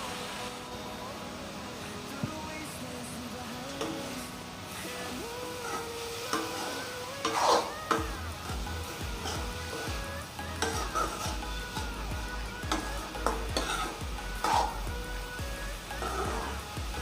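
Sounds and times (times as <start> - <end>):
beans sizzling in oil: 3.5 - 17.0
spatula scraping a pan: 5.6 - 8.1, 9.2 - 10.0, 10.6 - 11.8, 12.7 - 14.8, 16.0 - 16.7.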